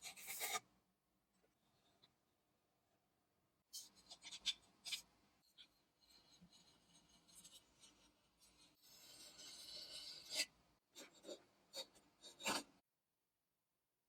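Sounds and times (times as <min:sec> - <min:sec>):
rasping scrape: 0:06.1 - 0:10.6.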